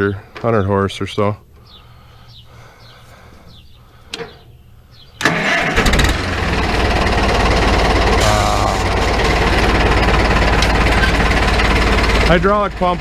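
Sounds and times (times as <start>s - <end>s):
diesel tractor engine starting: 5.2s - 13.0s.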